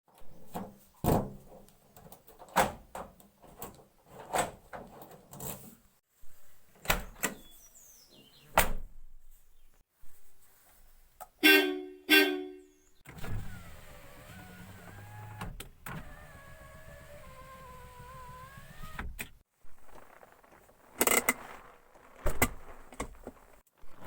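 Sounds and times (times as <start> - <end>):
car horn honks: 11.4 - 12.8.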